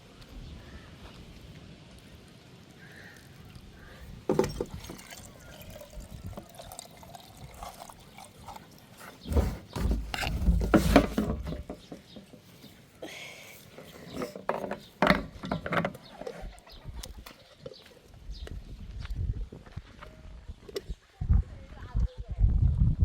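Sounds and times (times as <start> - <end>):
water splashing and pouring: 4.3 - 9.6.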